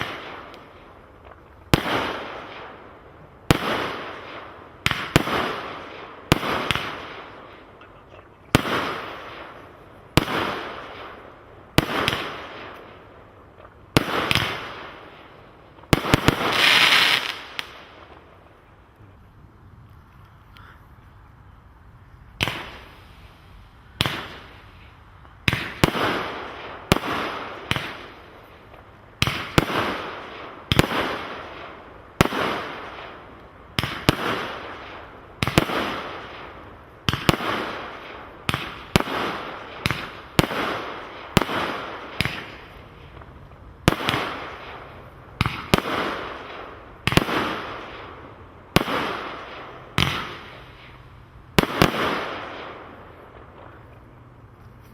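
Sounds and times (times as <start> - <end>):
loud firework bangs: 1.7 - 2.8, 3.4 - 7.7, 8.5 - 12.8, 13.9 - 15.2, 15.8 - 18.1, 24.0 - 24.6, 25.4 - 28.2, 29.2 - 53.8.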